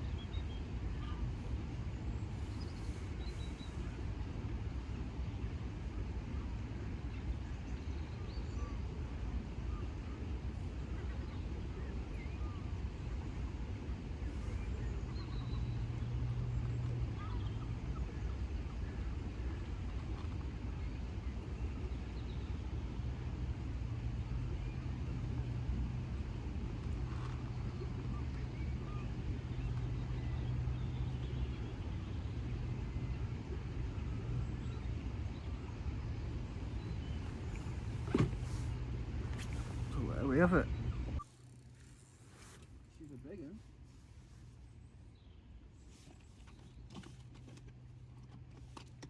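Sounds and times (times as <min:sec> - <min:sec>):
low hum: 0:00.0 - 0:46.9
low outdoor rumble: 0:00.0 - 0:49.0
faint bird chirps: 0:14.2 - 0:19.0.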